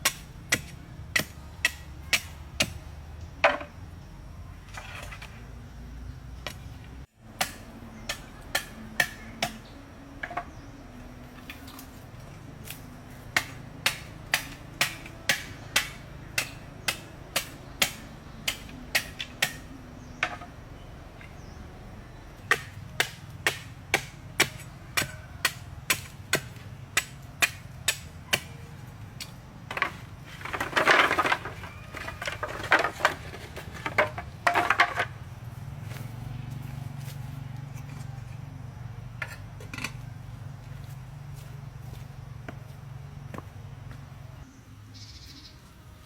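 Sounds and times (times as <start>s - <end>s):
scraping and knocking: 29.7s - 35.2s
steady low hum: 31.4s - 46.0s.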